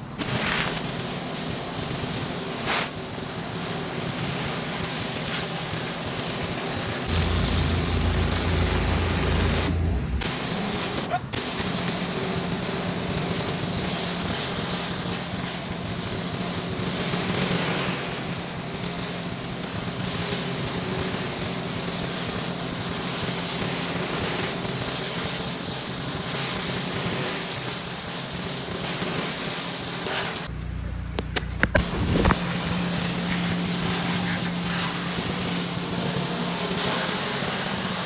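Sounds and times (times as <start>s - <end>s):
high-pressure water spray hissing: 0.1s - 30.5s, 31.6s - 38.0s
pressure washer engine droning: 1.0s - 17.2s, 28.4s - 38.0s.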